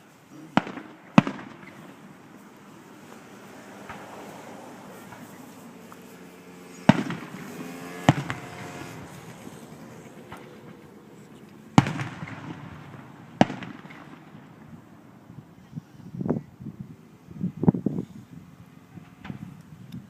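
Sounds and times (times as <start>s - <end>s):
fireworks bangs: 0.0s - 15.6s, 19.0s - 19.6s
rumbling echo: 6.4s - 15.4s.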